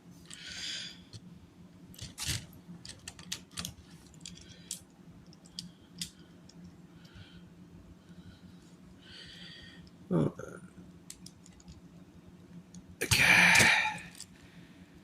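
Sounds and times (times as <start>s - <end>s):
plastic pieces clicking: 2.0s - 4.8s, 13.1s - 14.3s.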